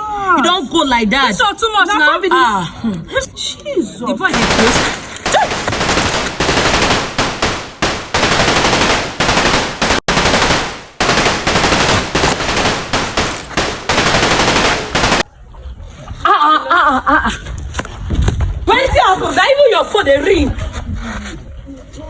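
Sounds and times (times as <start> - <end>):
machine-gun fire ringtone: 4.3 - 15.3.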